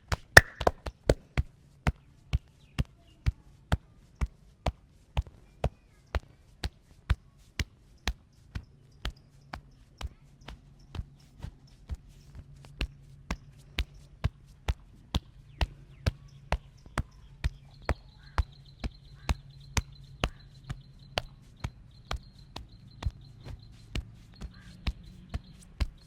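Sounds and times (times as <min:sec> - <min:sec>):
rapid hand slaps: 0:00.4 - 0:01.4.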